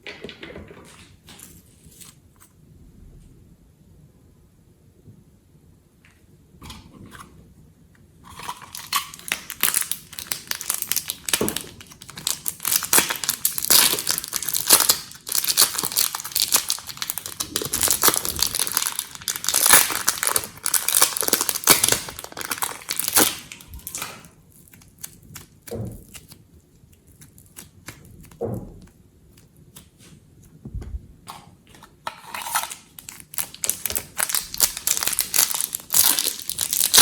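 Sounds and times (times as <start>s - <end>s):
slime crackling and popping: 8.3s - 30.2s, 32.4s - 37.0s.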